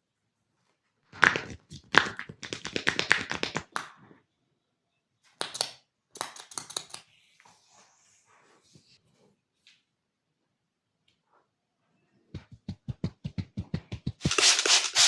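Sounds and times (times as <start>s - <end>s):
hands smacking body: 1.2s - 3.9s.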